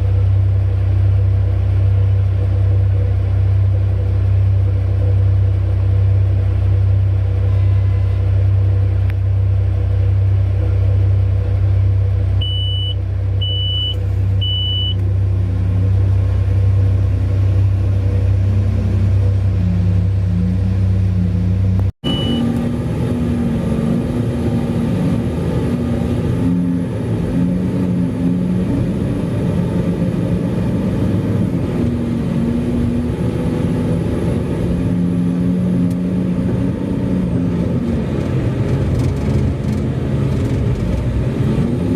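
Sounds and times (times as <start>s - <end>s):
engine note rising and falling: 0.0s - 41.9s
heavy diesel engines under load: 0.0s - 41.9s
short high beeps: 12.4s - 15.0s, 22.0s - 22.6s.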